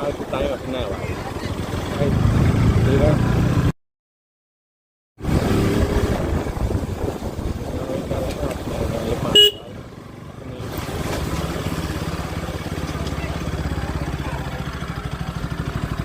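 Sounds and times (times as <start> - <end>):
motorcycle engine running: 5.3 - 16.0
horn toot: 9.3 - 9.7.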